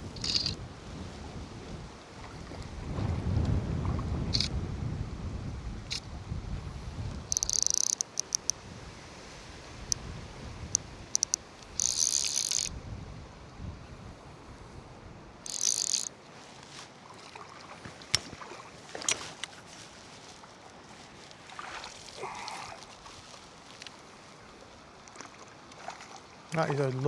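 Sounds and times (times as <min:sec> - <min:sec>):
fishing reel ratchet buzzing: 0:00.2 - 0:00.6, 0:07.3 - 0:08.5, 0:11.1 - 0:12.7, 0:15.5 - 0:16.1.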